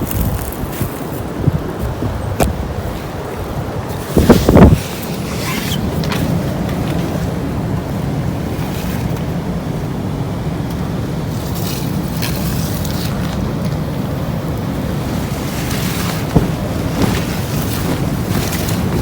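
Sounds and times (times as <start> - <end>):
strong gusty wind: 0.0 - 19.0
brief rustles: 15.3 - 19.0.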